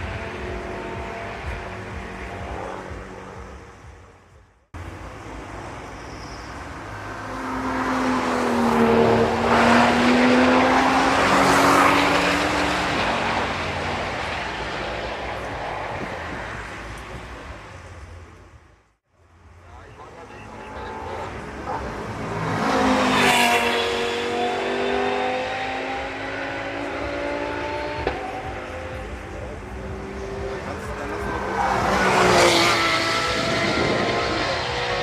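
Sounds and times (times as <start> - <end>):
race car engine passing: 0.0 - 18.6, 19.5 - 35.0.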